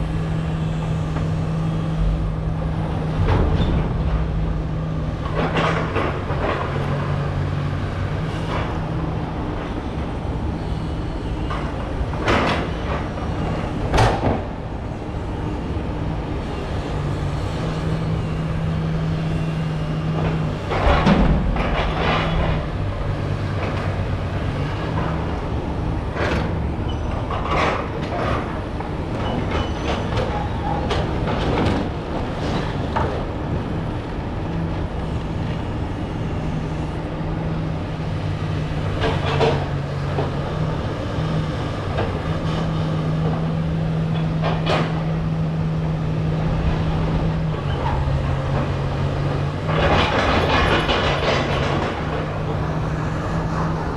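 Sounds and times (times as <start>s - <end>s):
heavy construction machinery running: 0.0s - 53.9s
sharp metallic clanks and knocks: 20.2s - 22.8s.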